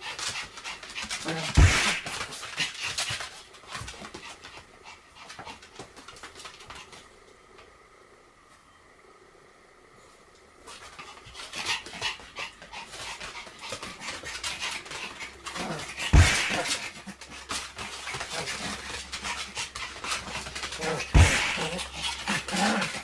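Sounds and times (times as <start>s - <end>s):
dogs scuffling: 0.0s - 7.7s, 10.6s - 23.0s
heavy thump: 1.6s - 2.2s, 16.1s - 16.8s, 21.2s - 21.7s
dog breathing: 10.6s - 23.0s.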